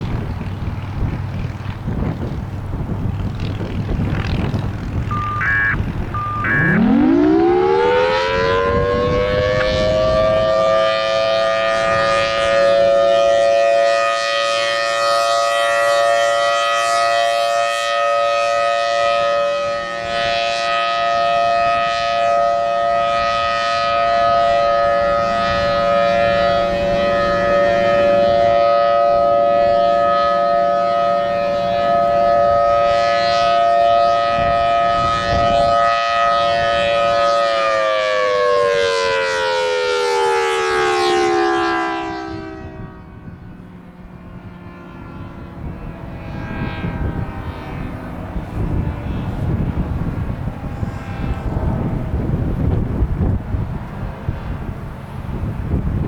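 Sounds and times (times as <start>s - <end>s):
warning siren winding up: 5.0s - 42.2s.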